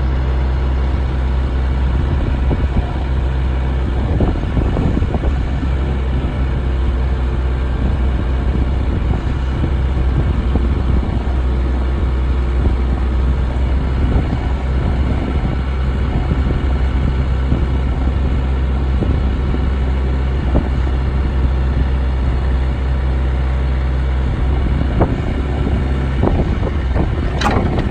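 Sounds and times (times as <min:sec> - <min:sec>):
diesel engine running: 0:00.0 - 0:27.9
short knocks: 0:27.3 - 0:27.9.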